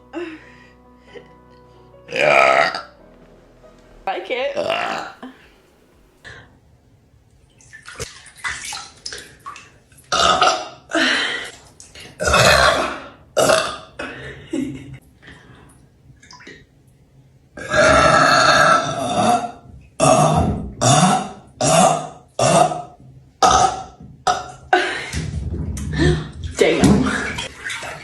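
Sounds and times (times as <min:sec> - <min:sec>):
woman burping: 0:02.1 - 0:03.0, 0:04.6 - 0:05.6, 0:12.2 - 0:14.9, 0:17.6 - 0:25.2.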